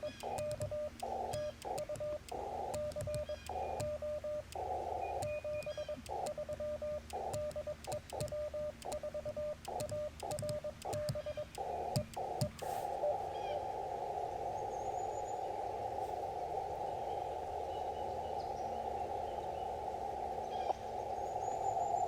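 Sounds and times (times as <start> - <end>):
paddle key clicks: 0.0 - 12.8
morse code sidetone: 0.0 - 13.2
radio receiver hiss: 0.0 - 22.0.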